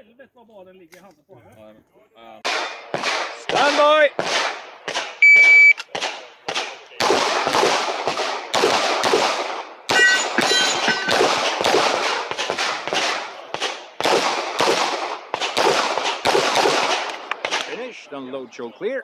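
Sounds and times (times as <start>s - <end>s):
pistol shots: 2.4s - 5.2s, 5.8s - 17.8s
ringing tones: 9.9s - 11.3s.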